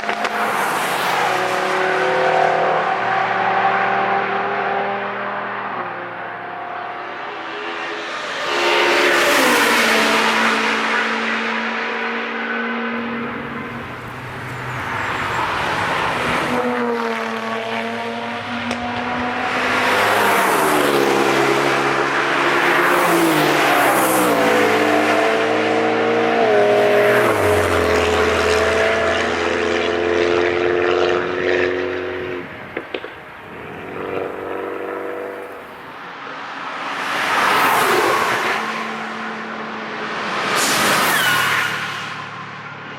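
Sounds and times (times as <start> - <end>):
cars driving past at speed: 0.0 - 42.9.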